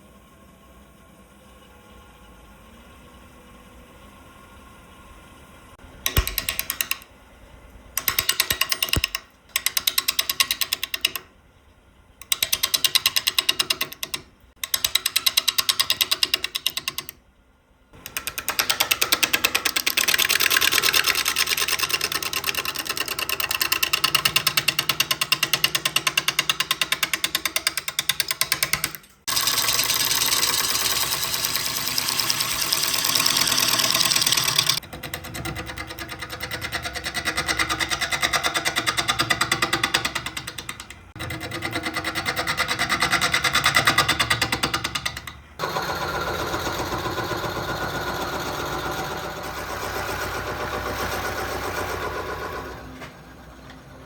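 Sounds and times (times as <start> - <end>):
lathe gouge chattering on wood: 18.0 - 52.6.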